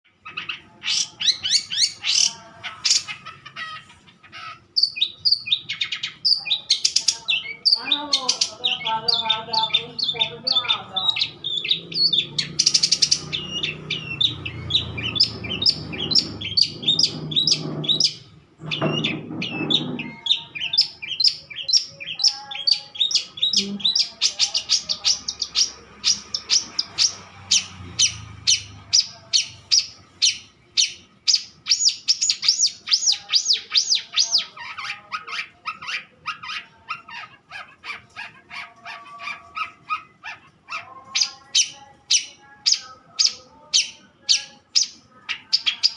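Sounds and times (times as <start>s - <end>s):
bird chirping repeatedly: 0.0s - 45.9s.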